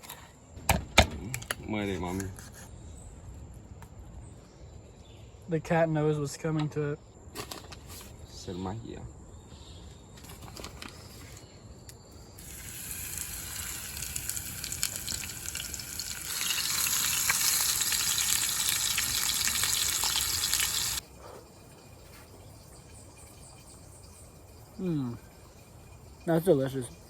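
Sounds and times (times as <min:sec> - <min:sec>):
fish frying sizzle: 0:12.4 - 0:21.0.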